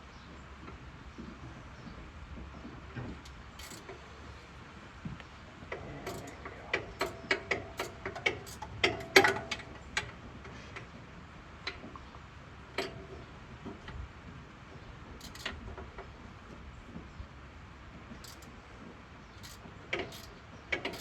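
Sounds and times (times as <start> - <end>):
ratchet wrench clicking: 3.6 - 4.0, 6.0 - 6.4, 7.0 - 9.6, 15.2 - 15.6, 18.2 - 18.6, 19.4 - 21.0.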